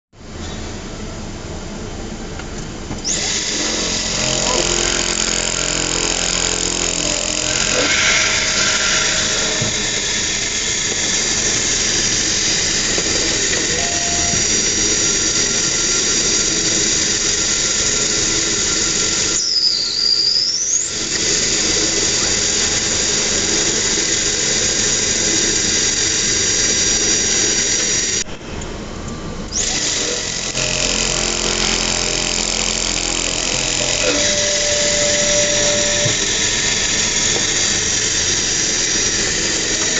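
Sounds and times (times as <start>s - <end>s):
spindle high-pitched whine: 0.2s - 39.9s
falling and rising whistle: 7.1s - 12.7s, 19.3s - 21.0s, 33.8s - 37.5s.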